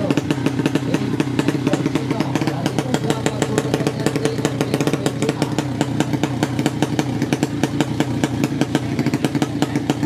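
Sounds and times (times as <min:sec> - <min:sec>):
exhaust popping: 0:00.0 - 0:10.0
motorcycle engine running: 0:00.0 - 0:10.0.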